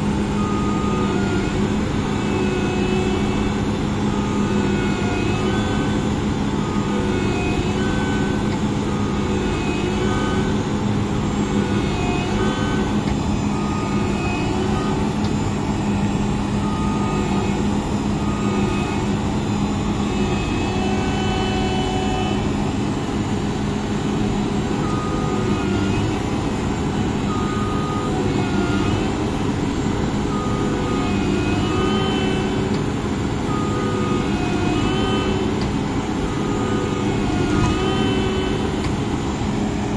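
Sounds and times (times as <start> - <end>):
combine harvester engine drone: 0.0 - 39.9
short high squeaking tones: 33.5 - 39.3.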